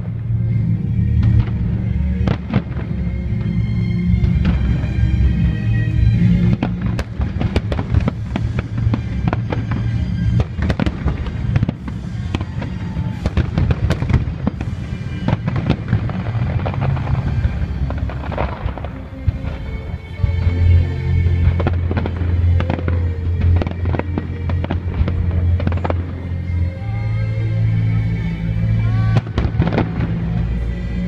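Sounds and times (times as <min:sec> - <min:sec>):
fireworks crackling and banging: 0:00.0 - 0:31.0
music playing: 0:00.0 - 0:31.0.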